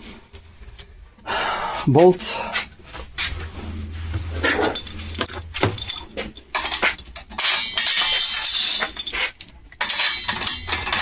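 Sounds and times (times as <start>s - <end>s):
metal bolts and washers rattling: 4.2s - 11.0s.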